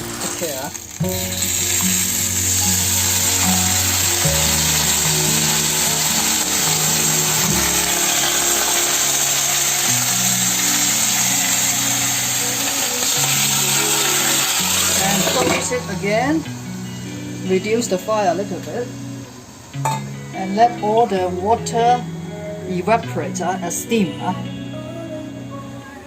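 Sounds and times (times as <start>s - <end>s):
water sizzling in hot oil: 0.0s - 16.9s
background music: 0.0s - 26.0s.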